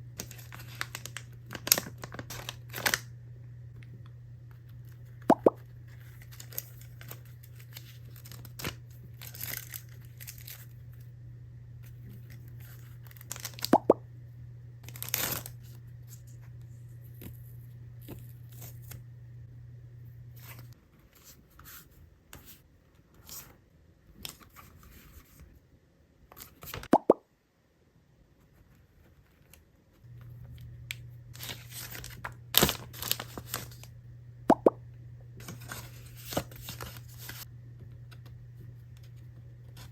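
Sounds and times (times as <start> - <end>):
packaging tearing and crinkling: 0.2 - 3.1, 6.2 - 10.7, 13.0 - 13.7, 14.9 - 15.6, 31.4 - 33.9.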